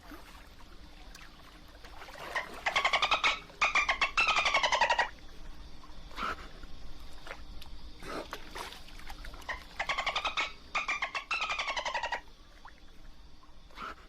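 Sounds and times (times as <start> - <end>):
dolphin whistle: 2.7 - 5.1.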